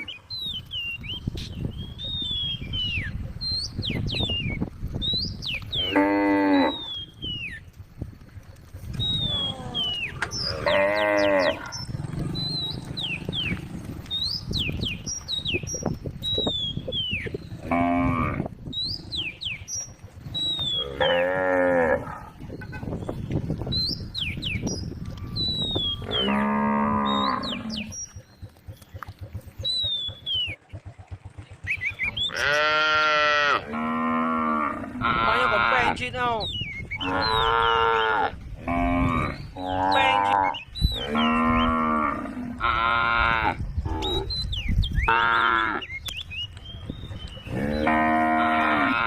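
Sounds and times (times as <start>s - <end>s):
cows mooing: 5.7s - 7.1s, 9.2s - 14.1s, 17.5s - 18.6s, 20.6s - 22.4s, 25.8s - 28.0s, 32.2s - 36.0s, 37.0s - 44.3s, 45.1s - 46.0s, 47.4s - 49.0s.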